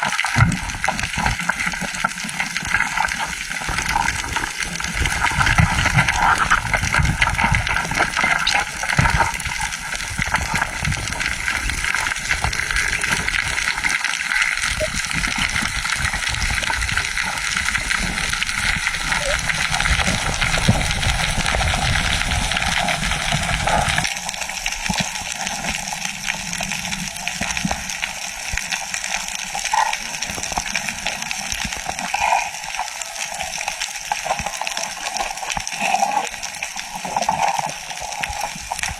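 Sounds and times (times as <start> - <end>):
underwater rushing water: 0.0 - 38.9.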